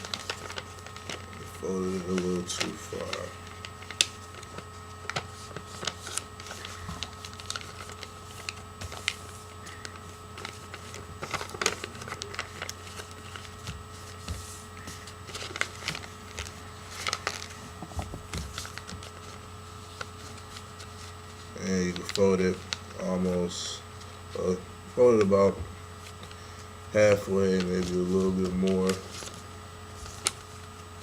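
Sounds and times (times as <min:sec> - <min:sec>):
paper crackling: 0:00.0 - 0:23.3, 0:23.9 - 0:31.0
faint hum: 0:00.0 - 0:31.0.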